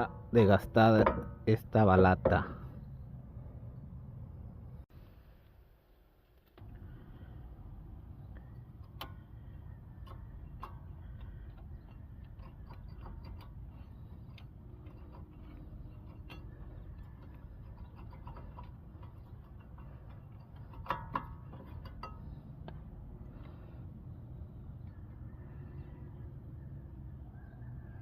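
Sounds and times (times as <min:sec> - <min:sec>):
low background hum: 0:00.0 - 0:27.6
metallic clicks of hand tools: 0:08.8 - 0:22.8.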